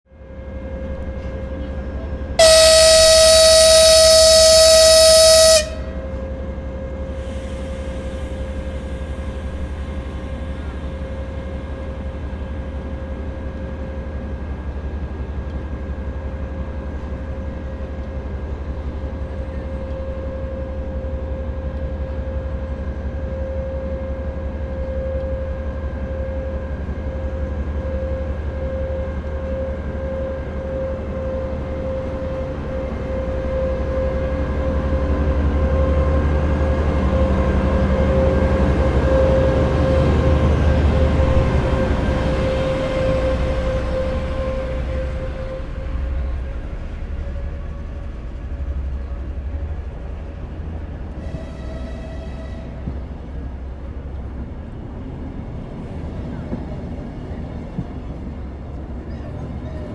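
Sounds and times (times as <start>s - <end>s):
locomotive engine throbbing: 2.4s - 6.2s
loud long horn blast: 2.4s - 6.3s, 37.8s - 46.4s.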